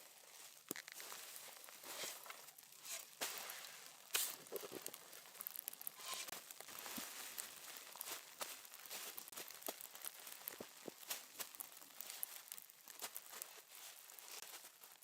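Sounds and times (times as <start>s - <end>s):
rustling and crinkling: 0.0s - 15.0s.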